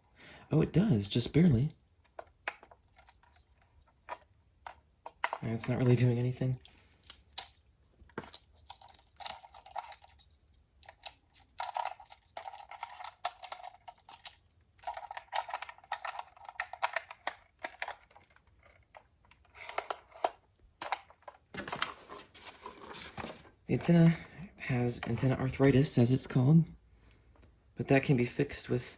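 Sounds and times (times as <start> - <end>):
plastic radio being handled: 2.0 - 24.2.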